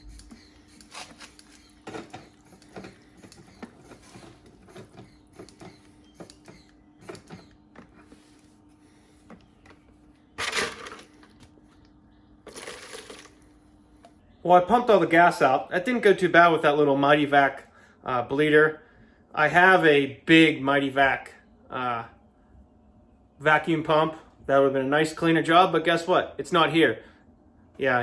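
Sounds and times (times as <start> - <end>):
hand vacuum pump clicking: 0.0 - 7.5.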